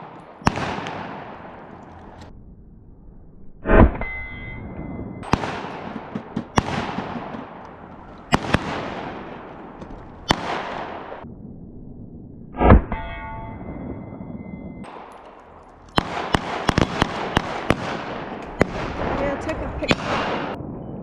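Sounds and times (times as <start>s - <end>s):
pistol shots echoing: 0.0s - 2.2s, 5.2s - 11.2s, 14.9s - 20.6s
ringing tone: 4.0s - 5.3s, 12.9s - 14.9s.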